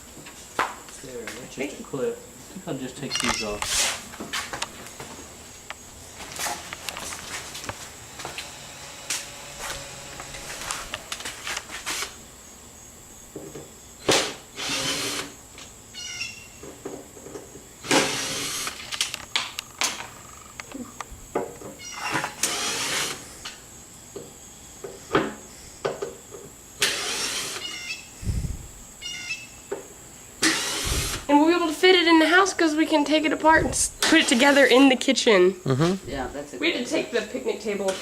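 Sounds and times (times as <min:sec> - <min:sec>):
power drill driving fasteners: 0:03.1 - 0:03.9, 0:08.2 - 0:12.2, 0:14.0 - 0:16.3, 0:17.8 - 0:23.3, 0:26.8 - 0:28.1, 0:30.4 - 0:31.3, 0:34.0 - 0:34.8, 0:37.8 - 0:38.0
parts clicking and knocking: 0:17.2 - 0:22.7.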